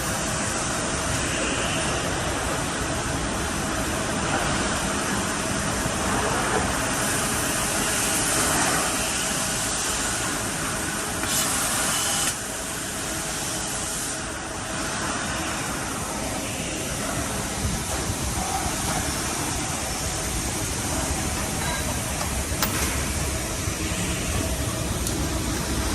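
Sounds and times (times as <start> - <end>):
machine hum: 14.3 - 25.9.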